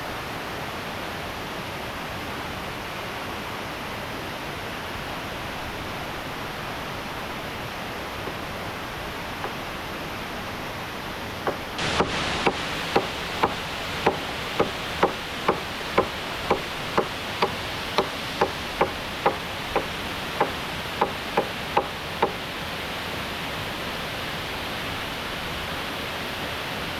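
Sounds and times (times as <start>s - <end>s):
waterfall rushing: 0.0s - 26.9s
wood struck with hand tool: 11.4s - 22.4s.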